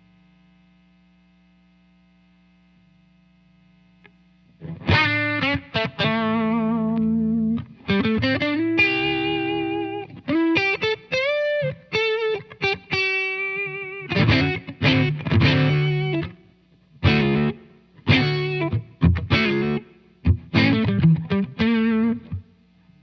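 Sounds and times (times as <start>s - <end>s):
overdriven electric guitar lead: 4.6s - 22.5s
electric guitar strummed chords: 4.6s - 22.6s.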